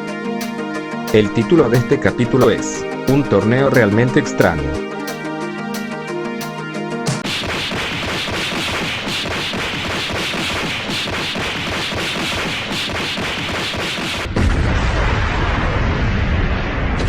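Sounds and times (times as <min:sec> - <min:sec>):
music: 0:00.0 - 0:11.3
cartoon fight impacts: 0:07.1 - 0:14.5.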